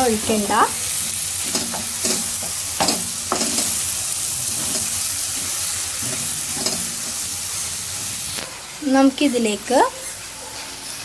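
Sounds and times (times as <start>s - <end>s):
vegetables sizzling in a pan: 0.0s - 11.0s
spoon scraping a pan: 0.7s - 8.4s.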